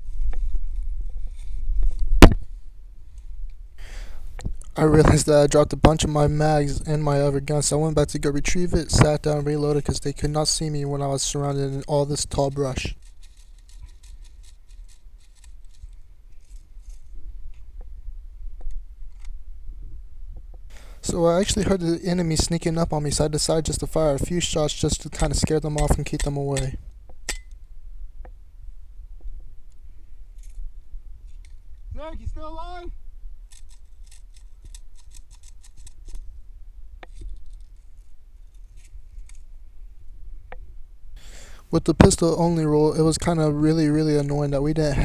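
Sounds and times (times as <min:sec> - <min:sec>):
gear rustling: 0:07.4 - 0:17.0
sharp clicks of pistol gear: 0:12.8 - 0:17.0, 0:33.5 - 0:36.2
low wind rumble on microphone: 0:17.0 - 0:21.2
sharp clicks: 0:20.7 - 0:26.8.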